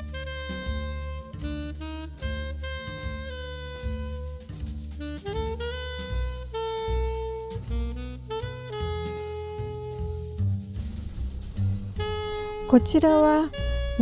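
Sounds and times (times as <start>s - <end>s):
jazz saxophone lead: 0.0s - 10.0s, 10.9s - 14.0s
drum beat: 10.9s - 14.0s.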